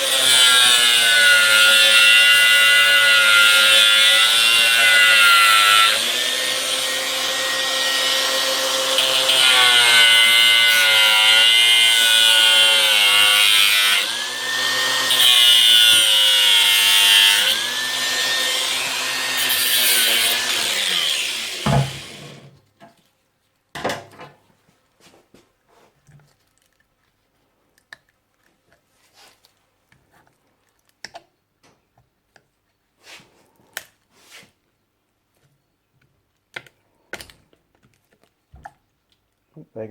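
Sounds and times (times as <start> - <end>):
power tool cutting plastic: 0.0 - 22.6.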